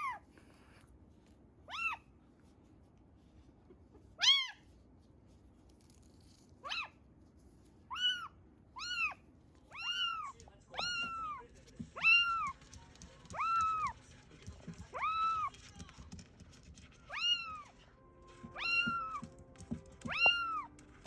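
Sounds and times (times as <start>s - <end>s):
kitten meowing: 7.9s - 11.4s, 18.6s - 19.3s, 20.0s - 20.7s.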